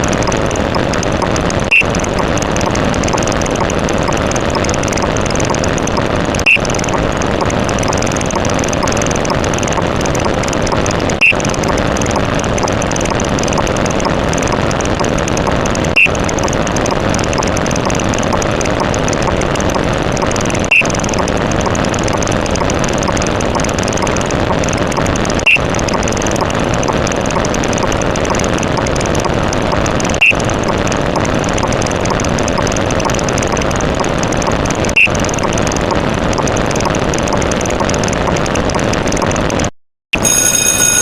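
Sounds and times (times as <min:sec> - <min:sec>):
short high beep: 0:40.2 - 0:41.0.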